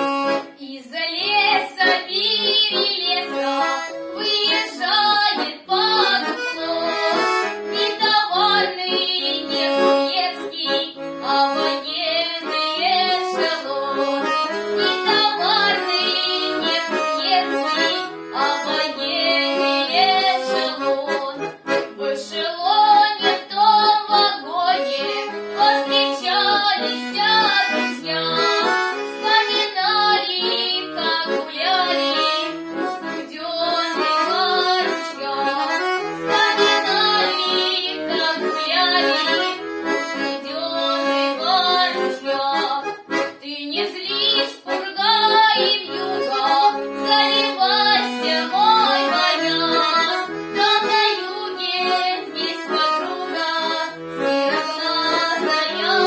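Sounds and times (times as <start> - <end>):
accordion playing folk tune: 0.0 - 56.0.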